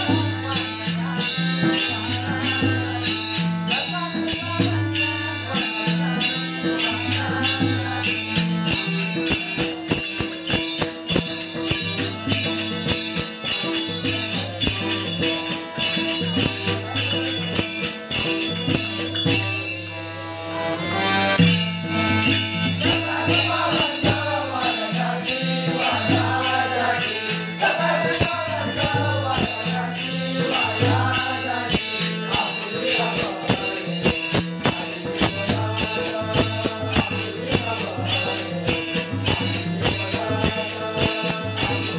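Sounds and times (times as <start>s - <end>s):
man singing: 0.0s - 10.7s, 22.8s - 41.9s
hand cymbals beat: 0.0s - 19.9s, 21.4s - 41.9s
sustained drone tones: 21.3s - 41.9s.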